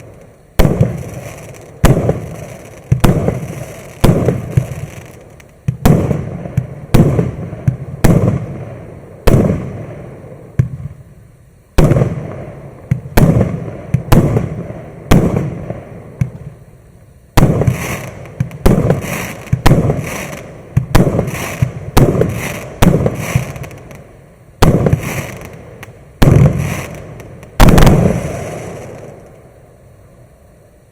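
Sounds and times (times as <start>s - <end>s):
fireworks cake firing bangs: 0.0s - 10.0s, 11.8s - 16.5s, 17.4s - 24.0s, 24.6s - 29.3s.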